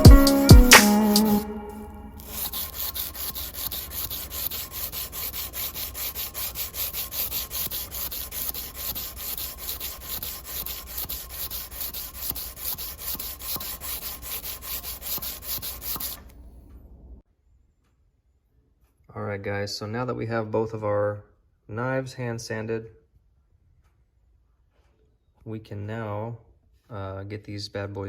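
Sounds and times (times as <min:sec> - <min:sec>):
sandpaper rubbing on steel blade: 0:00.0 - 0:01.4, 0:02.2 - 0:16.3.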